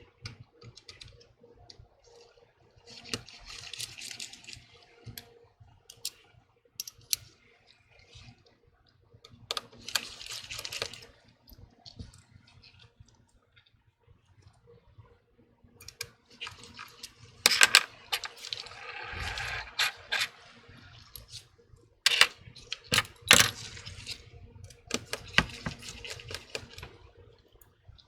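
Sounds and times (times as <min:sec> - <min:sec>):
small tools clicking on phone: 0:17.5 - 0:20.3, 0:22.1 - 0:23.7.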